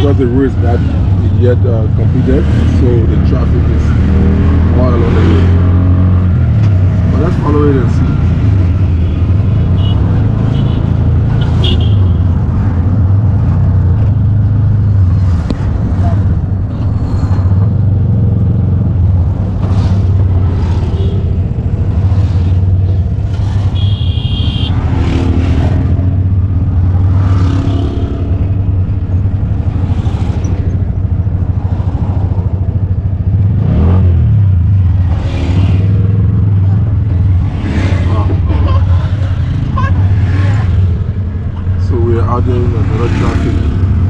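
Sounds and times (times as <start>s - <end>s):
engine revving: 0.0s - 11.6s, 24.5s - 32.4s, 33.2s - 44.0s
car and motorcycle engines passing: 0.0s - 44.0s
low traffic rumble: 0.0s - 44.0s.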